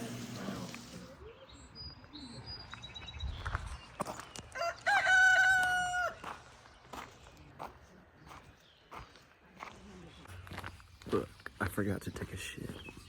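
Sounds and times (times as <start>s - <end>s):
rooster crowing: 4.6s - 6.4s.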